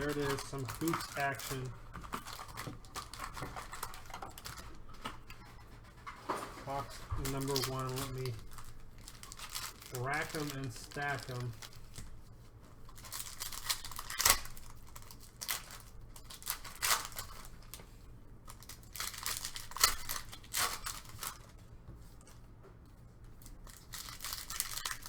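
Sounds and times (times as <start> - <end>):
wrappers ripped open: 0.0 - 4.8, 6.7 - 12.0, 12.9 - 17.7, 18.5 - 21.5, 23.4 - 25.0.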